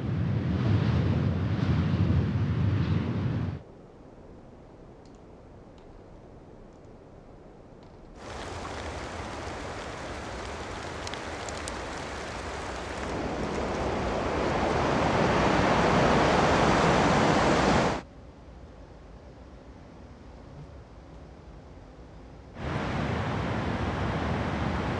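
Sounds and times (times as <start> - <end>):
faint ticks: 7.8 - 14.0
strong wind rushing: 8.2 - 18.0, 22.6 - 24.9
faint hiss: 8.2 - 24.9.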